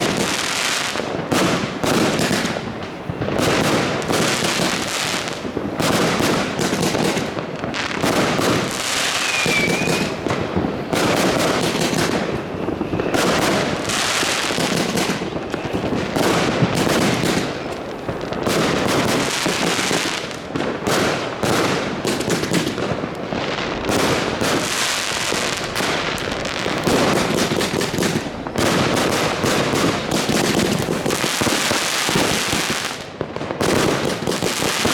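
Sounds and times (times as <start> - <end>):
fireworks bangs and crackling: 0.0 - 34.9
firework whistle: 1.8 - 18.1.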